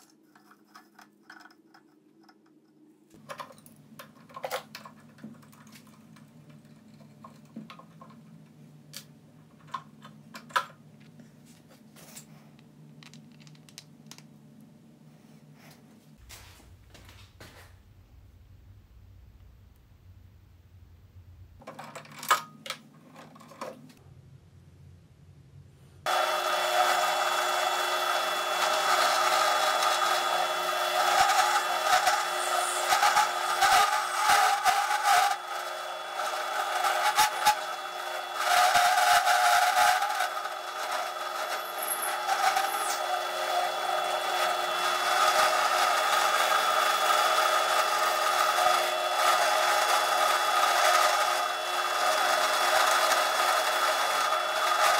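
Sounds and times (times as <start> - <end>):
drill press motor humming: 26.1 - 54.9
end mill rasping plastic: 26.1 - 54.9.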